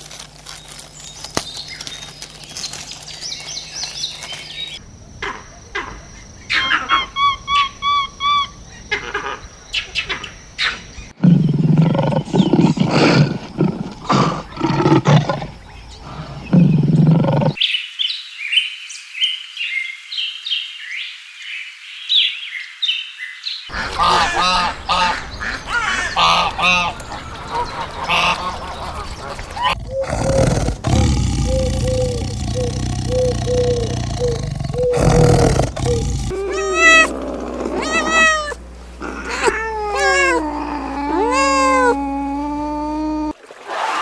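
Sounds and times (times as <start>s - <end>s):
lower pulsed animal calls: 23.7s - 43.3s
short chirping calls: 24.8s - 43.0s.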